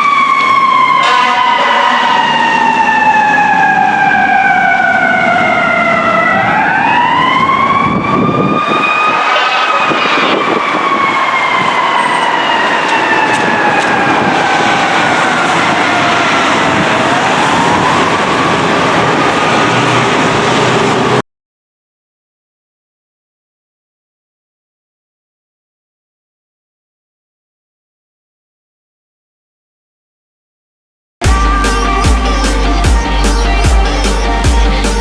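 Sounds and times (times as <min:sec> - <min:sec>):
fire engine siren wailing: 0:00.0 - 0:21.2, 0:31.2 - 0:35.0
road traffic noise: 0:00.0 - 0:21.2, 0:31.2 - 0:35.0.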